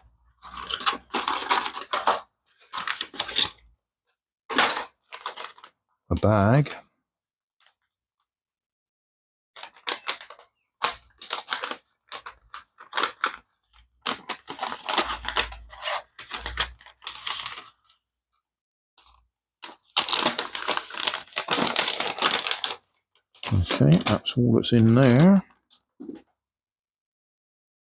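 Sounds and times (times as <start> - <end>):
plastic bag crinkling: 9.6 - 17.6, 19.6 - 22.8.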